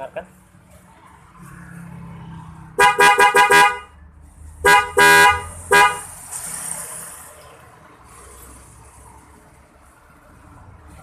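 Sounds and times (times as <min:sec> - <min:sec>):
motorcycle horns honking: 0:02.8 - 0:04.0, 0:04.6 - 0:06.2.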